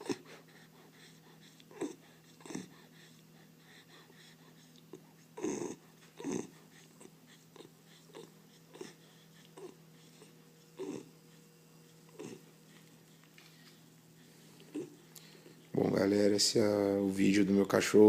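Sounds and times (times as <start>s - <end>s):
dog snoring: 0.0s - 12.8s, 14.2s - 15.1s
faint steady hum: 0.0s - 18.0s.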